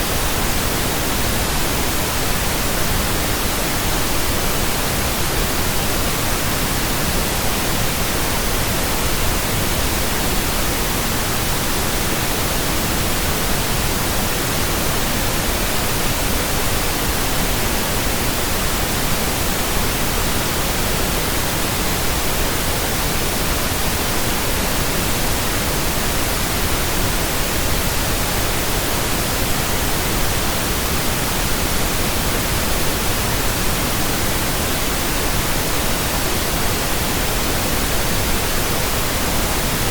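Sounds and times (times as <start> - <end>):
steady pink noise hiss: 0.0 - 39.9.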